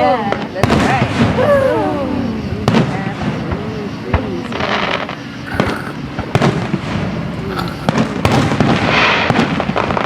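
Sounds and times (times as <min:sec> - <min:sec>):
fireworks crackling: 0:02.5 - 0:10.0
firework shells bursting: 0:04.2 - 0:10.0.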